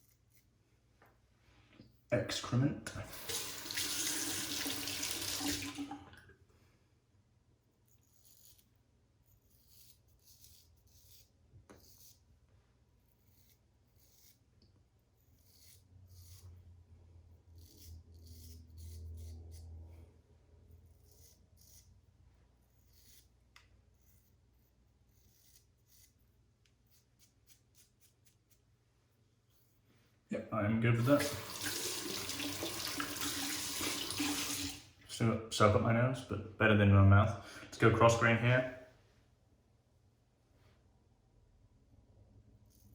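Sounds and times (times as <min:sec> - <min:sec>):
razor scraping stubble: 0:07.8 - 0:12.3, 0:13.1 - 0:16.7, 0:17.4 - 0:19.9, 0:20.7 - 0:28.7.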